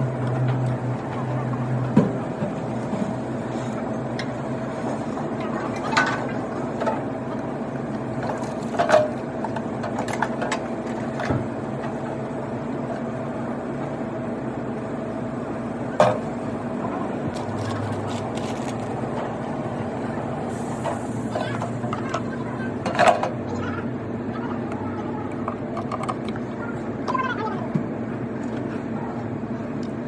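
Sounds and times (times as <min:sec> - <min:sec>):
mechanical hum: 0:00.0 - 0:30.0.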